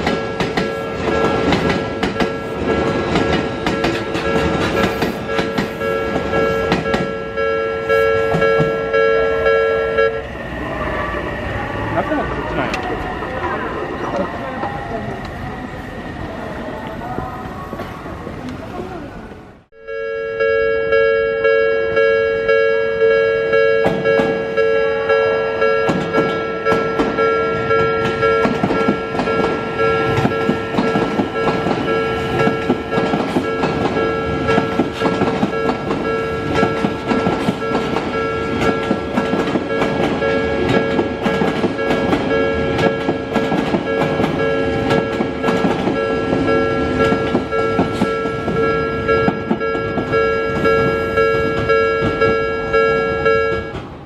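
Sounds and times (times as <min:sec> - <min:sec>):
train wheels clicking over rail joints: 0:00.0 - 0:07.3, 0:25.8 - 0:52.8
level crossing alarm clanging: 0:00.0 - 0:18.0, 0:19.8 - 0:54.0.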